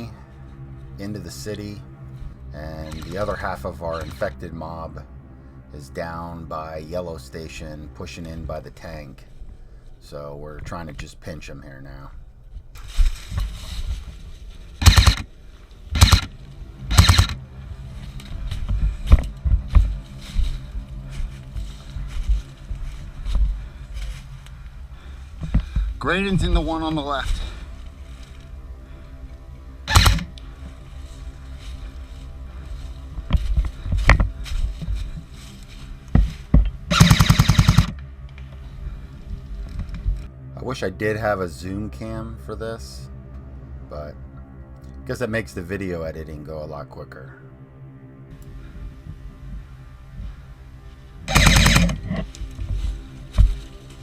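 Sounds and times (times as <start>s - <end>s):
airsoft gun full-auto bursts: 14.8s - 15.2s, 16.0s - 16.3s, 16.9s - 17.4s, 29.9s - 30.3s, 36.9s - 37.9s, 51.3s - 52.0s.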